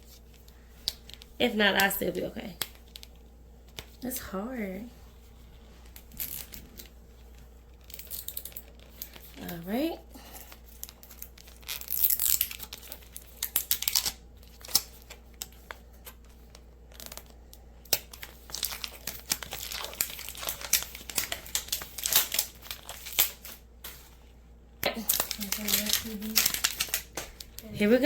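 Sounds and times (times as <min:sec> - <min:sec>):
packaging crinkling and tearing: 0:05.8 - 0:09.6, 0:10.4 - 0:24.2, 0:24.8 - 0:28.0.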